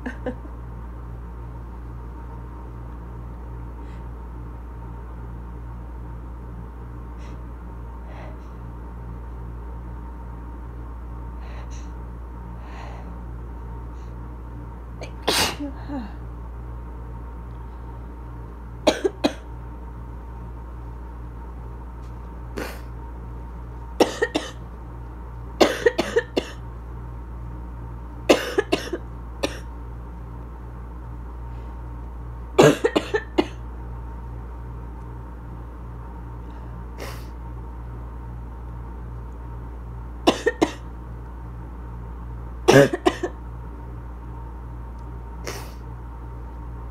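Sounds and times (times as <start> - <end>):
steady low hum: 0.0 - 46.9
person coughing: 15.0 - 16.2, 18.9 - 19.4, 24.0 - 24.6, 25.6 - 26.6, 28.3 - 29.7, 32.6 - 33.6, 40.3 - 40.8, 42.7 - 43.4.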